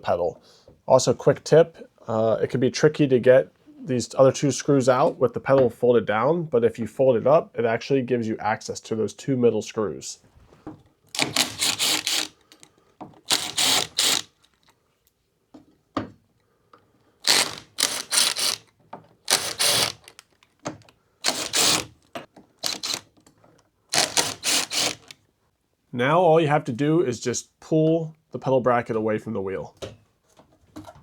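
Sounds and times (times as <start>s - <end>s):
ratchet clicking: 11.2s - 12.4s, 13.3s - 14.3s, 17.3s - 18.6s, 19.3s - 20.2s, 21.2s - 21.9s, 22.6s - 23.0s, 24.0s - 25.1s.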